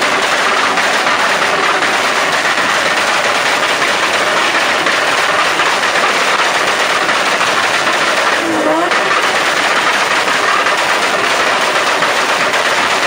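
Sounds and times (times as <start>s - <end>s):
car engine and exhaust roar: 7.8s - 10.0s.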